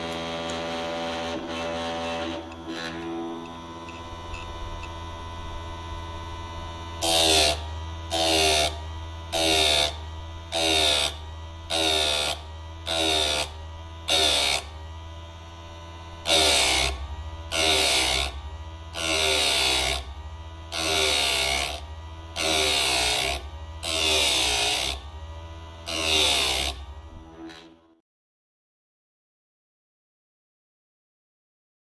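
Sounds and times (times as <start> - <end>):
sharpener motor running: 0.0 - 28.0
grinding wheel on chain: 7.0 - 14.7, 16.3 - 18.4, 19.0 - 20.1, 20.8 - 25.0, 25.8 - 27.7.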